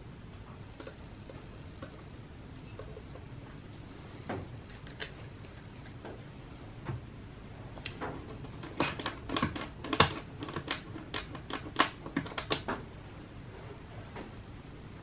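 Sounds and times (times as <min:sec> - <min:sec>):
typewriter keys clacking: 0:08.3 - 0:12.8.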